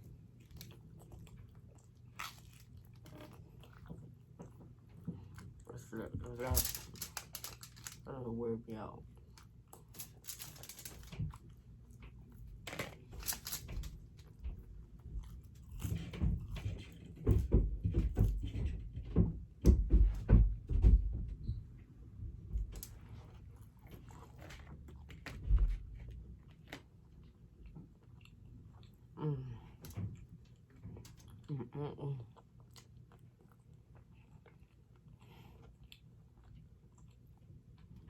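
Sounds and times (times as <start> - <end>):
person chewing and biting food: 0.0 - 5.6.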